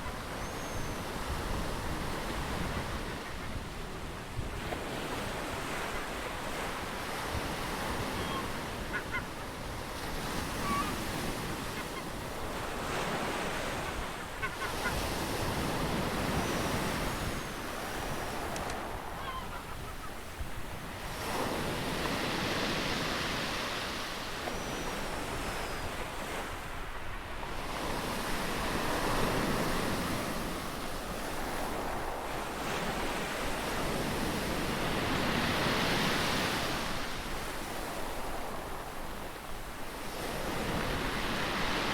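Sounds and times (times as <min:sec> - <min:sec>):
faint bird calls: 0:00.0 - 0:01.3, 0:07.8 - 0:20.5
ocean waves breaking: 0:01.1 - 0:24.4.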